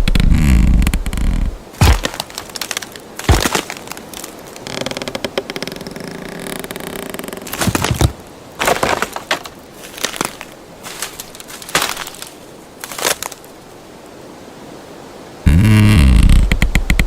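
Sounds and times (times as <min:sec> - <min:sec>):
wood cracking and snapping: 0:00.0 - 0:13.4.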